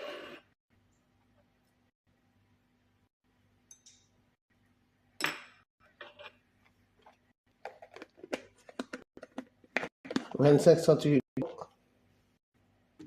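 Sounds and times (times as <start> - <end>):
kitchen items clicking and tapping: 7.6 - 10.6.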